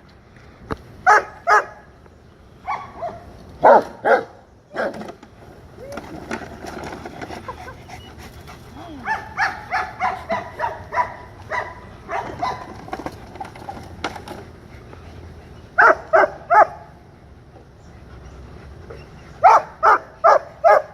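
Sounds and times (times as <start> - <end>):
dog barking: 1.1 - 1.8, 2.7 - 5.0, 9.0 - 12.7, 15.8 - 16.9, 19.4 - 20.9.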